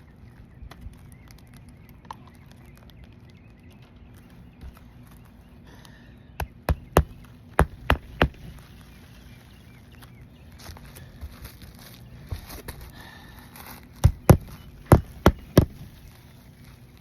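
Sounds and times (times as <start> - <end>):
hammer striking roofing nails: 6.4 - 8.4, 14.0 - 15.9.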